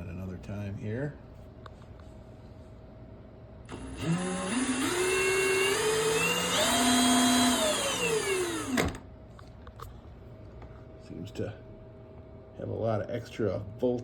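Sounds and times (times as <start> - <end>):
electric drill motor whine: 3.7 - 9.0.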